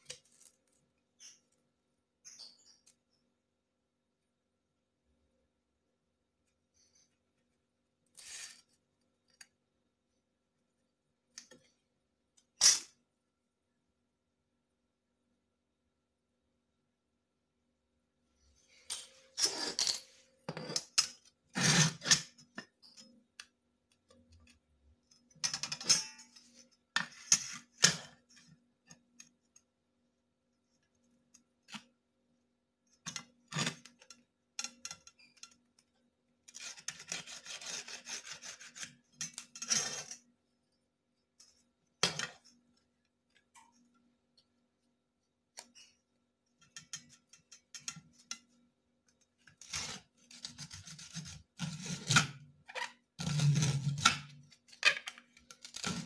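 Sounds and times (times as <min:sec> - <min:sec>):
ceramic tile scraping and clinking: 0:18.8 - 0:23.4, 0:36.5 - 0:40.3.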